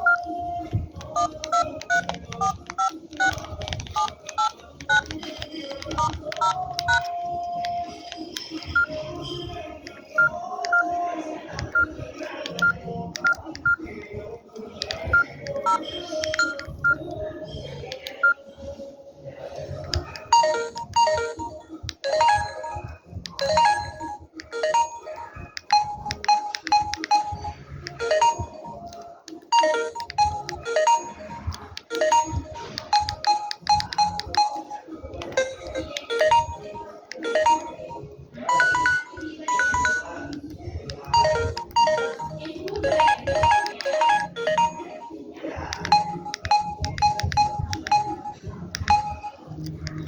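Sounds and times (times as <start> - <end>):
electronic ringtone melody: 0.0 - 7.2, 20.2 - 50.0.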